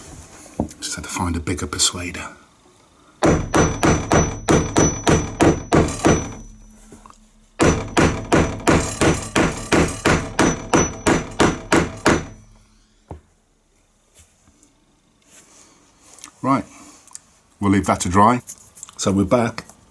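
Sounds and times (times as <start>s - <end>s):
hammer driving wooden dowel: 3.2s - 12.6s.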